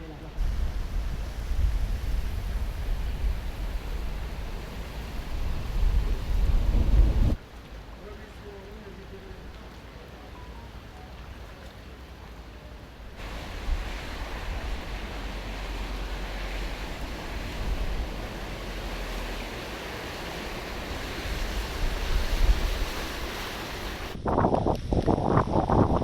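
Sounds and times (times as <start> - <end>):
storm water rushing: 0.0 - 24.4
wind: 0.0 - 26.0
wind rumbling on microphone: 0.1 - 7.4, 13.1 - 26.0.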